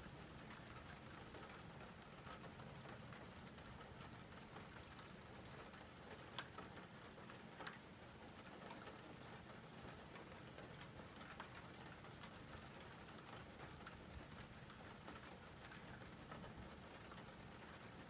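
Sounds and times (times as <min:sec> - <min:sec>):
faint rain falling: 0:00.0 - 0:18.0.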